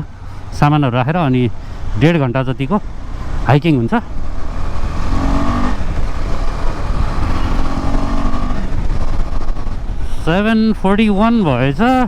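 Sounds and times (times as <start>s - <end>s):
motorcycle engine running: 2.8s - 11.5s
wind noise on microphone: 4.2s - 10.2s.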